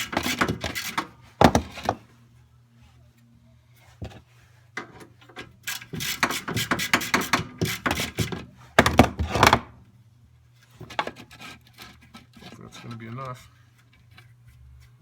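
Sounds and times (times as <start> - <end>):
tools clicking and knocking: 0.0 - 2.0, 4.8 - 9.7.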